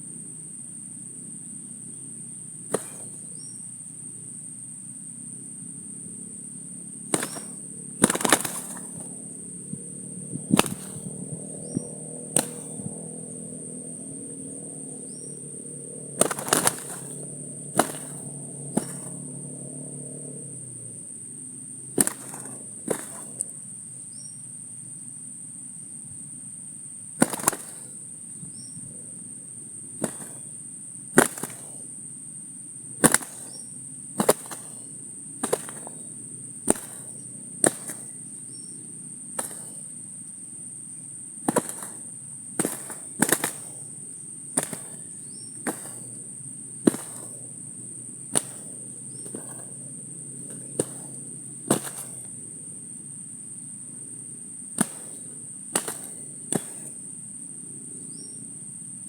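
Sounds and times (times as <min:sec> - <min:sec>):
high-pitched insect drone: 0:00.0 - 0:59.0
sharp loud clicks: 0:02.7 - 0:03.2, 0:07.1 - 0:09.2, 0:10.4 - 0:13.0, 0:16.2 - 0:19.2, 0:21.9 - 0:23.5, 0:27.2 - 0:28.7, 0:30.0 - 0:30.5, 0:31.1 - 0:31.9, 0:33.0 - 0:38.7, 0:39.4 - 0:39.9, 0:41.4 - 0:43.9, 0:44.5 - 0:46.2, 0:46.8 - 0:47.4, 0:48.3 - 0:49.7, 0:50.4 - 0:52.3, 0:54.8 - 0:57.0.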